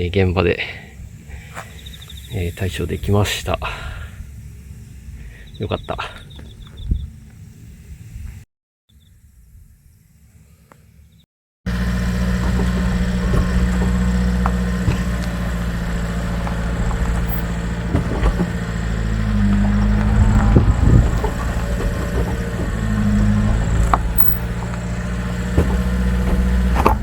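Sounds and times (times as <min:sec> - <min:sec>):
road drone: 0:03.8 - 0:05.6, 0:11.7 - 0:27.0
van engine running: 0:11.7 - 0:27.0.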